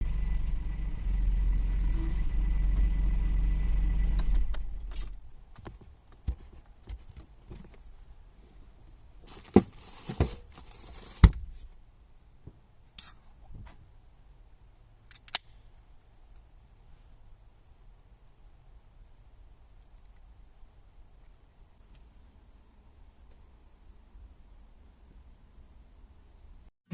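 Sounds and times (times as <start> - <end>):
small car engine rumbling: 0.0 - 5.6.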